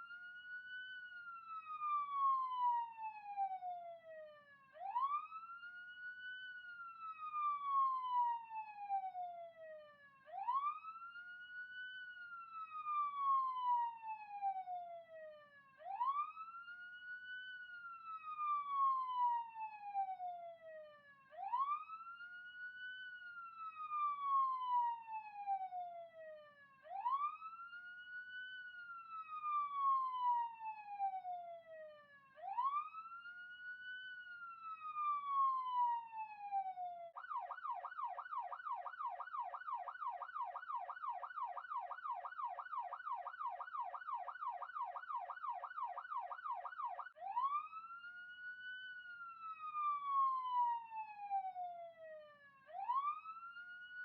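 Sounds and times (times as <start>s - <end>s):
police siren wailing: 0.0s - 54.0s.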